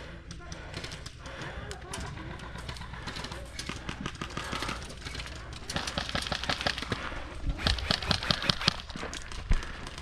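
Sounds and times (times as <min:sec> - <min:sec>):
airsoft guns firing rapidly: 0:02.2 - 0:09.0.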